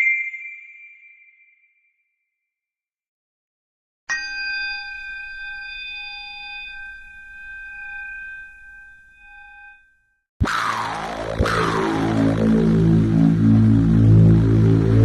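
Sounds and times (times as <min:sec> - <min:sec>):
loud dense sound: 0:10.4 - 0:15.0.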